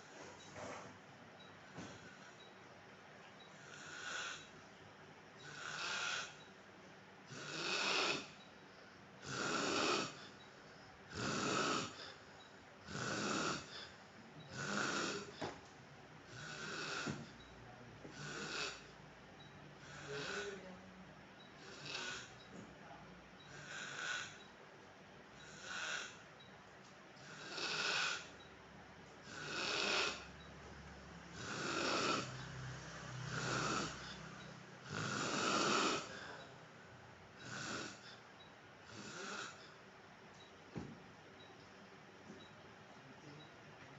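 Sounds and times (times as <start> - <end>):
man snoring: 3.5 - 4.6, 5.4 - 6.4, 7.3 - 8.4, 9.2 - 10.4, 11.1 - 12.2, 12.9 - 15.5, 16.3 - 17.4, 18.1 - 19.0, 19.8 - 20.7, 21.6 - 22.4, 23.5 - 24.5, 25.4 - 26.3, 27.2 - 28.4, 29.2 - 30.4, 31.3 - 36.5, 37.4 - 38.2, 38.9 - 39.6.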